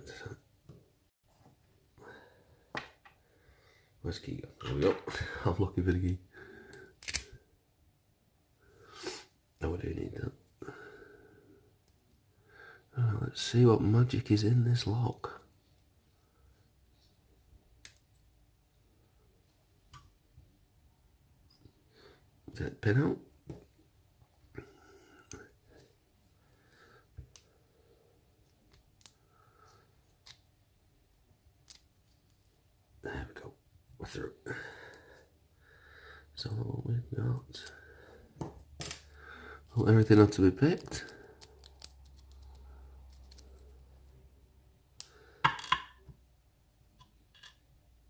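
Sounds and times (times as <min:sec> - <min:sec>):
small metallic lock clicks: 0:07.0 - 0:07.3.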